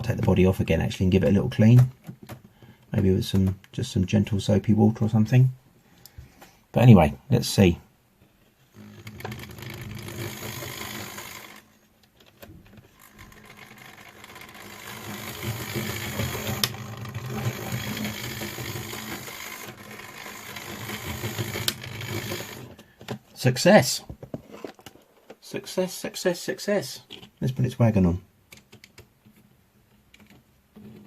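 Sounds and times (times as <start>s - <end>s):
model train motor whirring: 8.8s - 11.7s, 12.9s - 22.8s.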